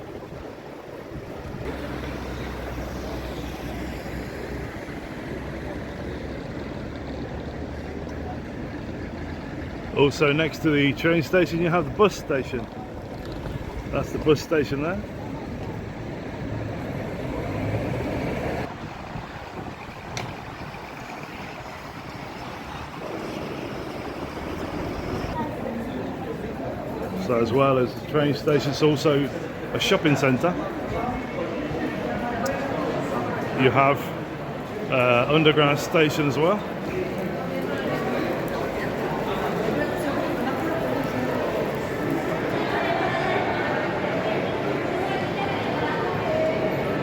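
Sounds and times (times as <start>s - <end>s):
street traffic noise: 0.0s - 47.0s
vehicle engine humming: 1.0s - 26.3s.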